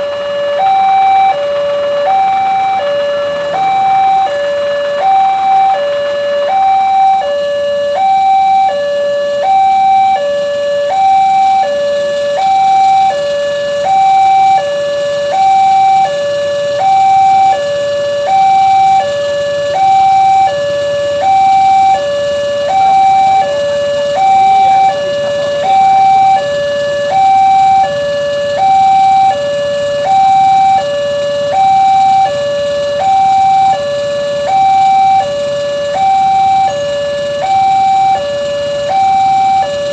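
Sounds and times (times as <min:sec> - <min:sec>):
level crossing two-tone alarm: 0:00.0 - 0:39.9.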